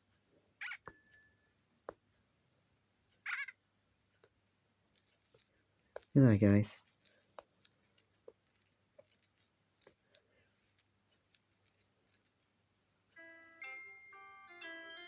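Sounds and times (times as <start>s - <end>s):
chiming music tune: 13.1s - 15.0s.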